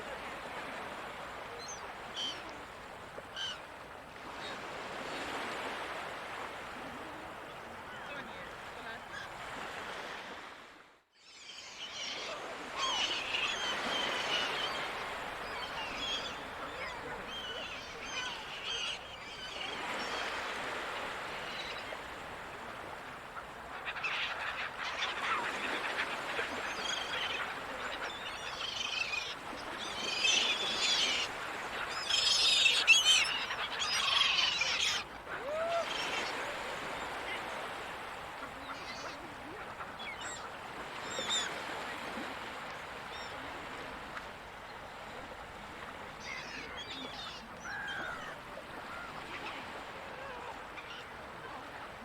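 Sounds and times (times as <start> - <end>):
ocean surf: 0.0 - 10.9, 11.8 - 52.0
gulls calling: 11.4 - 22.2, 23.4 - 37.9, 46.2 - 51.1.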